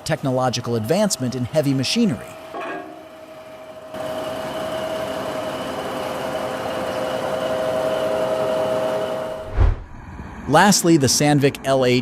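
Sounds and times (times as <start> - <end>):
heavy equipment engine running: 4.0 - 9.5.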